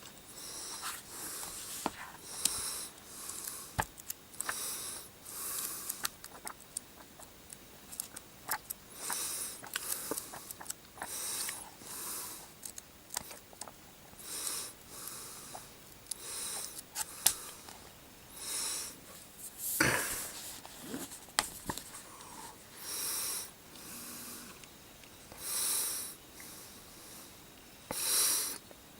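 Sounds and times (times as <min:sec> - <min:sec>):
heavy breathing: 0:00.3 - 0:03.8, 0:09.0 - 0:12.5, 0:14.2 - 0:21.2, 0:21.8 - 0:24.7
rustling: 0:00.7 - 0:02.6, 0:19.0 - 0:22.8.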